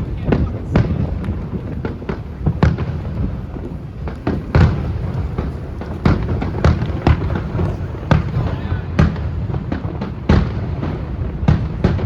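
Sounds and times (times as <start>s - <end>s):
low rumble of bursts: 0.0s - 9.6s.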